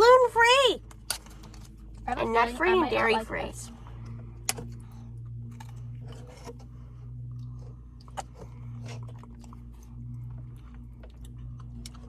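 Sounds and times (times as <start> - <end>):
steady low hum: 0.0 - 12.0
person chewing crunchy snack: 4.4 - 12.0.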